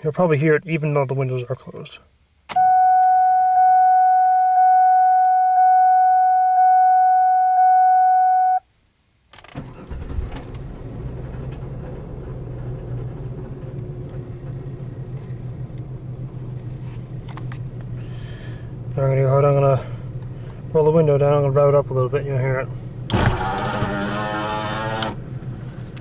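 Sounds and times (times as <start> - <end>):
car warning chime: 2.6 - 8.6
rattle: 9.3 - 18.0, 23.1 - 26.0
car engine idling: 9.7 - 26.0.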